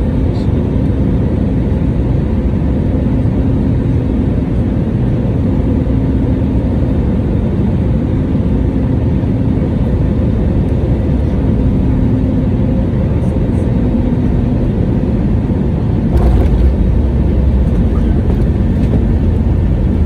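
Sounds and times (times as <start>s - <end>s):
jet engines rumbling: 14.2s - 20.0s
steady hum: 15.6s - 20.0s.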